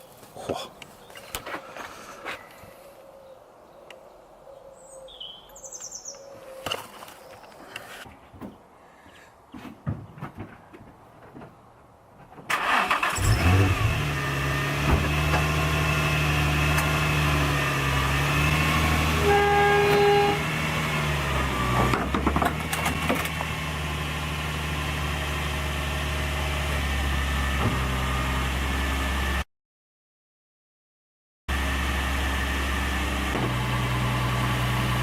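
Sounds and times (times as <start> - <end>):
car engine starting and idling: 12.5 - 29.4.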